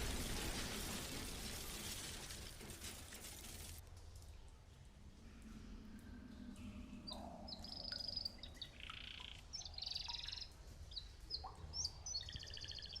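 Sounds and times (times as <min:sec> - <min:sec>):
faint low rumble: 0:00.0 - 0:09.8.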